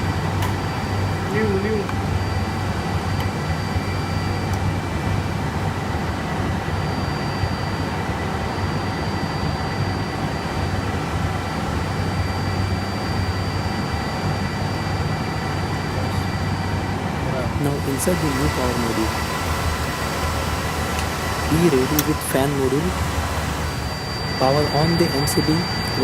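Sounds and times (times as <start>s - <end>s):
cooling fans whirring: 0.0s - 26.0s
high whines: 0.0s - 26.0s.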